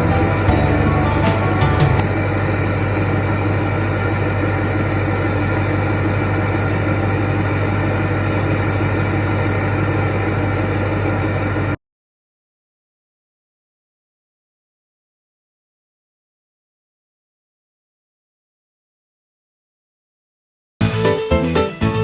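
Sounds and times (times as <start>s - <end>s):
diesel engine idling: 0.0s - 11.8s.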